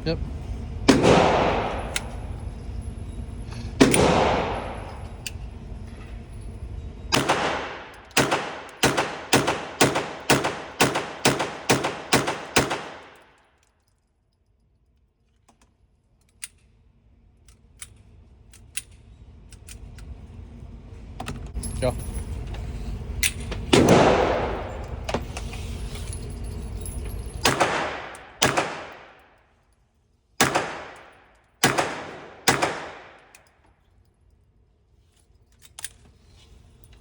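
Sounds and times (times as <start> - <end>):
suppressed gunshots: 0.9 - 2.2, 3.8 - 5.0, 7.1 - 13.1, 23.7 - 25.0, 27.5 - 29.2, 30.4 - 33.2
gun handling clicks: 14.8 - 16.7, 17.4 - 20.2, 30.4 - 33.7, 35.5 - 36.2.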